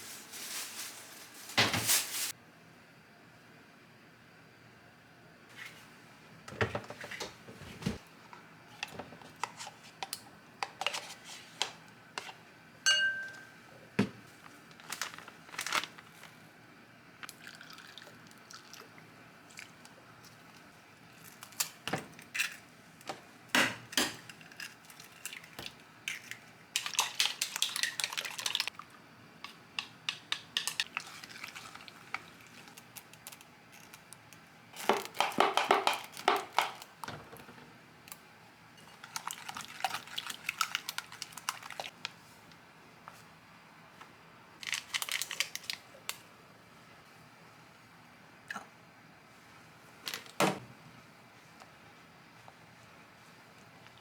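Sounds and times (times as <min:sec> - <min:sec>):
containers and packaging handled: 0:08.7 - 0:12.4, 0:14.2 - 0:16.4, 0:29.5 - 0:37.5, 0:44.6 - 0:46.2
short ringing tone: 0:12.9 - 0:13.5.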